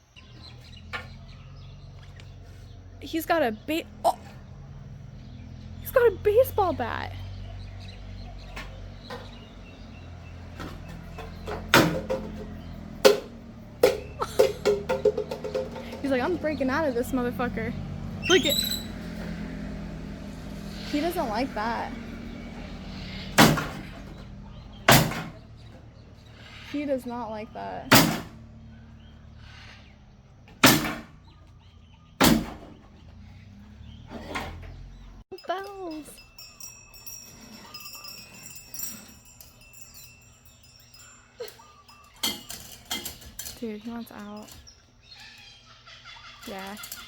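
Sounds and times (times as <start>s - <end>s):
bat banging against enclosure: 10.7s - 16.1s, 30.6s - 31.1s, 32.2s - 32.8s.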